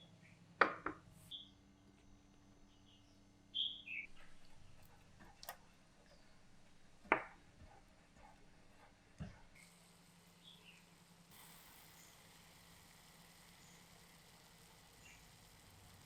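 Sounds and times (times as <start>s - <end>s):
faint steady hum: 0.0s - 16.0s
sharp clicks: 4.1s - 5.6s.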